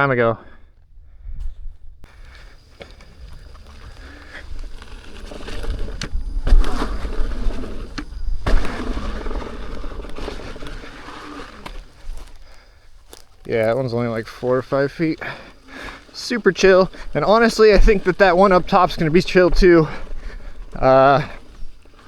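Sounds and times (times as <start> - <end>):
tyres crunching over rocky trail: 0.4 - 22.0.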